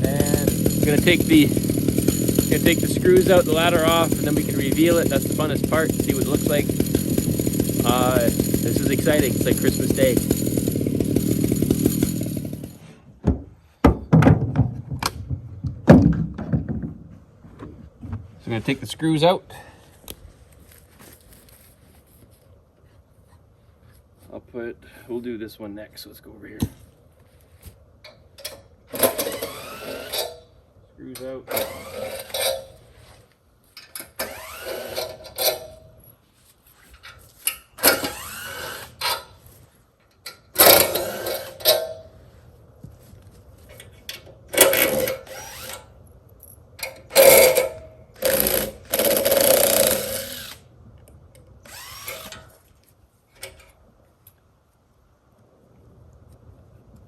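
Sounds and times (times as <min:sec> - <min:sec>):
cordless drill backing out screws: 0:00.0 - 0:12.8, 0:28.9 - 0:30.4, 0:31.5 - 0:32.8, 0:33.8 - 0:35.8, 0:37.4 - 0:39.3, 0:40.2 - 0:42.0, 0:44.1 - 0:45.9, 0:46.8 - 0:50.6, 0:51.6 - 0:52.6.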